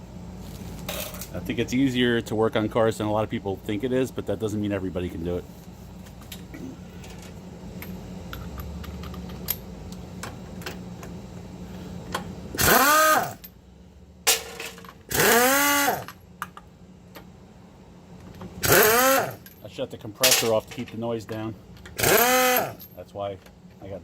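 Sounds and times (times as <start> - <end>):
low steady hum: 0.0 - 24.0
pneumatic impact wrench: 12.6 - 13.4, 14.4 - 16.2, 18.6 - 19.5, 22.0 - 22.8.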